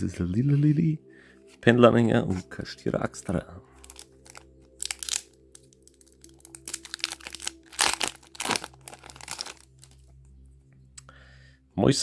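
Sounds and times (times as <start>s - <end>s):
foil wrapper crinkling and tearing: 3.8s - 10.0s.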